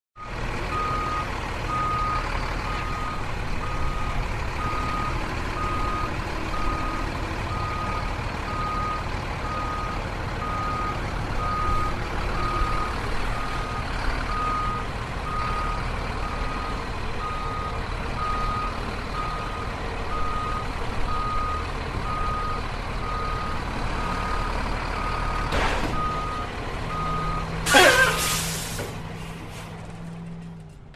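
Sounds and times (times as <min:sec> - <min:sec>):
truck engine running low: 0:00.2 - 0:30.9
reversing alarm beeping: 0:00.7 - 0:28.4
brake squeal and hiss: 0:27.6 - 0:29.7.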